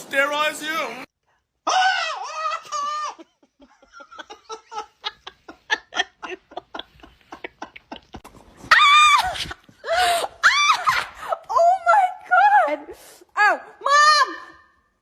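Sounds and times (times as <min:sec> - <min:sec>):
quiet rhythmic laughter: 0:02.7 - 0:08.3.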